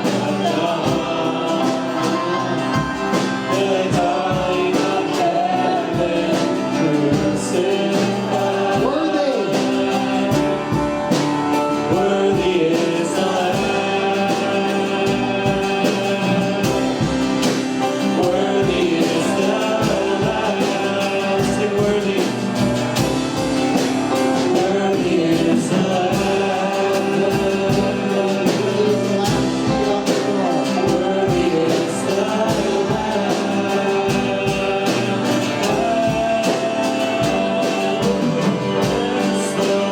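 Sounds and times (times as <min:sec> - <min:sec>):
worship song with band: 0:00.0 - 0:39.9.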